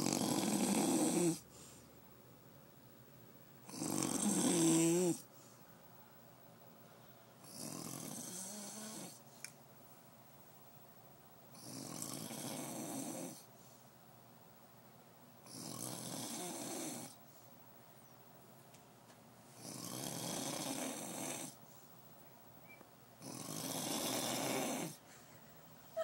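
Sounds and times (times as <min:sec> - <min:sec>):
man snoring: 0:00.0 - 0:01.5, 0:03.7 - 0:05.3, 0:07.4 - 0:09.2, 0:11.5 - 0:13.5, 0:15.4 - 0:17.2, 0:19.6 - 0:21.6, 0:23.2 - 0:25.0
quiet breathing: 0:00.0 - 0:02.2, 0:03.6 - 0:09.5, 0:11.5 - 0:14.2, 0:15.4 - 0:17.8, 0:19.4 - 0:22.8, 0:23.4 - 0:26.0.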